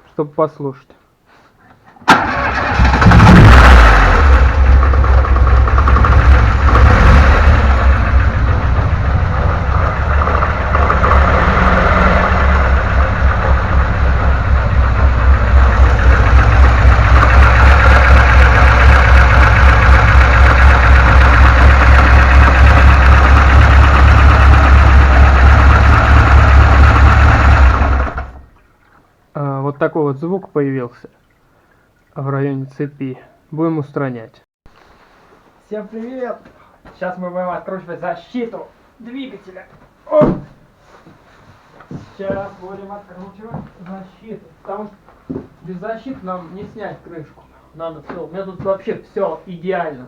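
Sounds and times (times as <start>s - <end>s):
car engine starting and idling: 2.1s - 28.6s
engine knocking: 3.3s - 28.4s.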